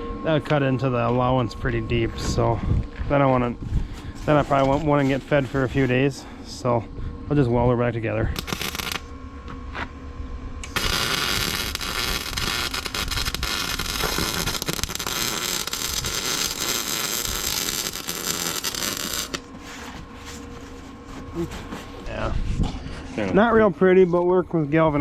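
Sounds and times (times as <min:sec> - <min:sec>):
arc welding crackling hiss: 0:08.3 - 0:09.1, 0:10.6 - 0:19.5.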